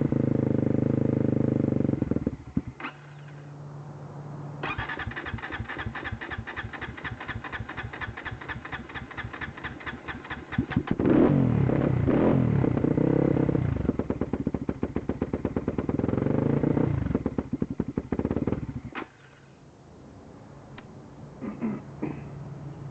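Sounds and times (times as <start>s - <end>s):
misfiring engine cranking and stalling: 4.6s - 12.1s, 13.8s - 19.2s.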